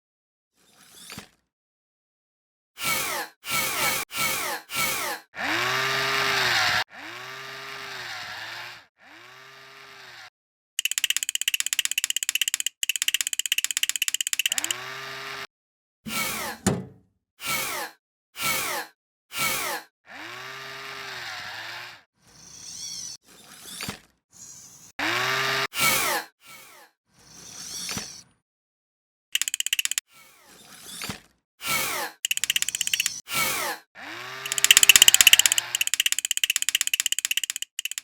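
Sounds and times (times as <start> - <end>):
electronic buzzing rattle: 10.8 - 14.8, 29.4 - 30.0, 32.2 - 33.2, 34.4 - 38.0.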